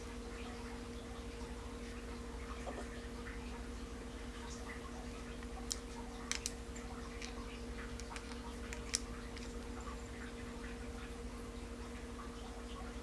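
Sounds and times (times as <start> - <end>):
steady hum: 0.0 - 13.0
small parts and tools clicking: 5.7 - 6.6, 7.2 - 7.4, 8.0 - 9.6.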